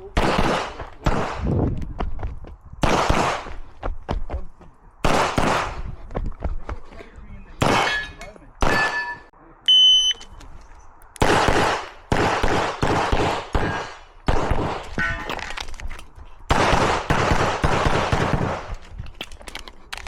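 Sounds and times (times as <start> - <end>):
handgun shots with echo: 7.6 - 9.2.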